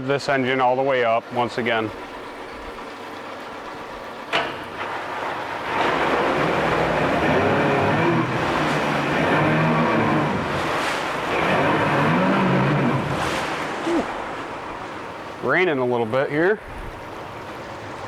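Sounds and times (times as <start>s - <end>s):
outboard motor running: 0.0s - 18.0s
clunk: 4.3s - 6.6s.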